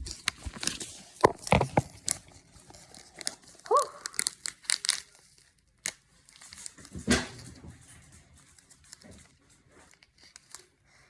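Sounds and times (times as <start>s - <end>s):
candy wrapper crinkling and tearing: 0.1s - 6.9s, 9.9s - 10.7s.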